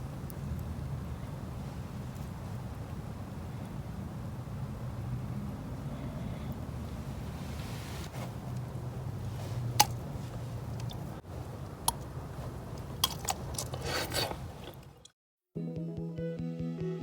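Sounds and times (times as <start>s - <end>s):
campfire crackling: 0.0s - 15.0s
music: 15.6s - 17.0s.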